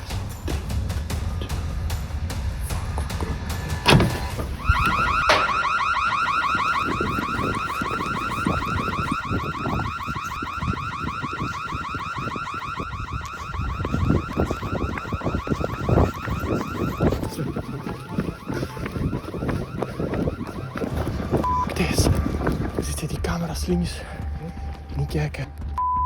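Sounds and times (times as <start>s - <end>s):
warbling door alarm: 3.8s - 26.0s.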